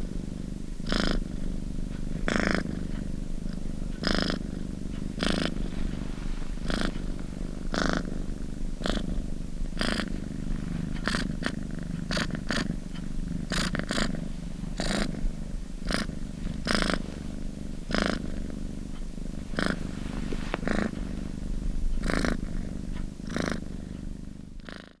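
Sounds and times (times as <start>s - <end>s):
cat purring: 0.0s - 25.0s.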